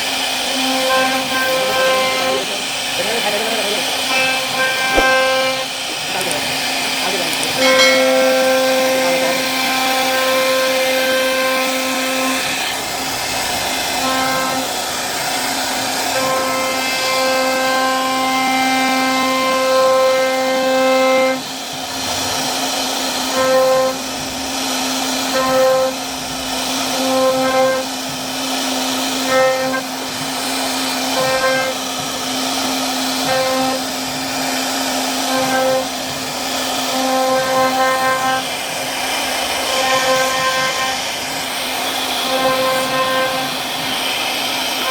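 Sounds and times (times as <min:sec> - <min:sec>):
router spindle whining: 0:00.0 - 0:44.9
bit carving wood: 0:00.4 - 0:44.9.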